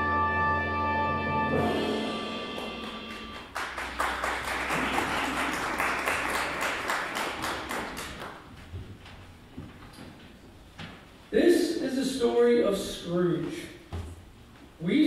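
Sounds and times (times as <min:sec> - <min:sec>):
instrumental music: 0:00.0 - 0:03.6
audience applause: 0:02.5 - 0:08.5.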